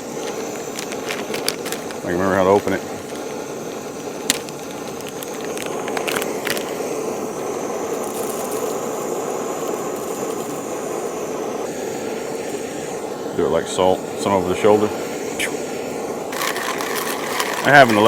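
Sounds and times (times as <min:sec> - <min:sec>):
coffee beans clicking and rattling: 0:00.0 - 0:10.8, 0:16.3 - 0:18.0
steady background hiss: 0:00.0 - 0:18.0.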